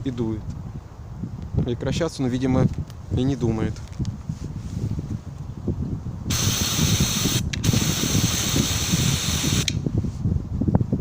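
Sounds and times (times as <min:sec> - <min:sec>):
wind buffeting microphone: 0:00.0 - 0:11.0
aerosol can spraying hiss: 0:06.3 - 0:09.8.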